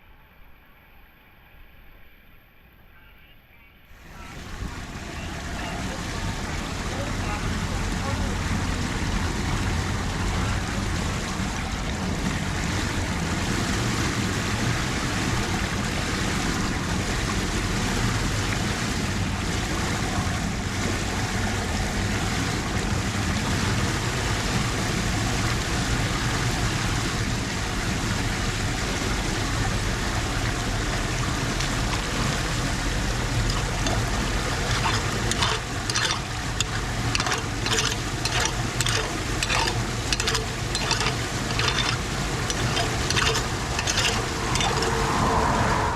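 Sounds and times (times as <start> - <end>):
water rushing into drain: 4.0 - 45.9
clicks or scrapes: 33.4 - 45.1.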